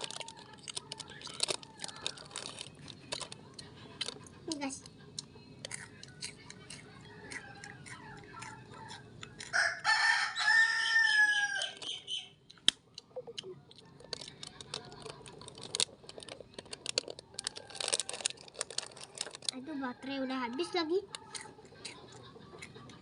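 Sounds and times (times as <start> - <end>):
chicken clucking: 3.4 - 12.4, 19.6 - 23.0
rooster crowing: 8.8 - 12.0, 19.7 - 20.9.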